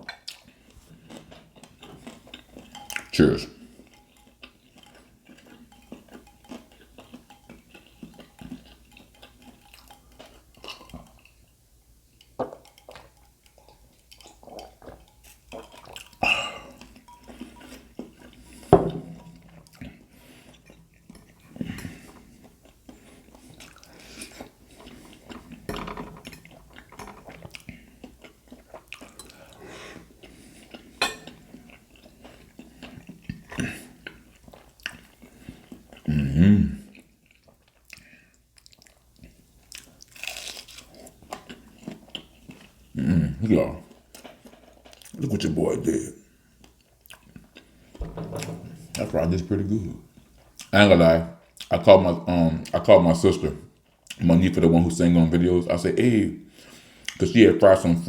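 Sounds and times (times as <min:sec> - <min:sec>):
chewing: 0:00.0 - 0:11.6, 0:12.2 - 0:25.7, 0:26.3 - 0:36.1, 0:36.8 - 0:42.9, 0:43.8 - 0:45.2, 0:46.6 - 0:48.0
cutlery clinking on plate: 0:31.0 - 0:31.4, 0:48.0 - 0:49.1.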